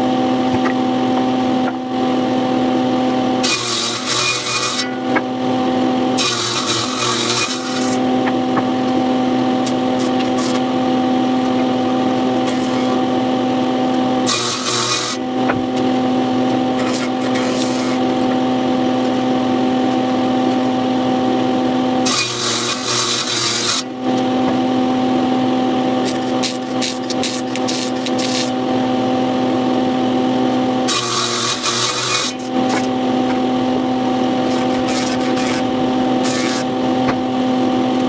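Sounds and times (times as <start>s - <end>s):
power tool cutting wood: 0.0s - 38.0s
power tool motor humming: 0.0s - 38.0s.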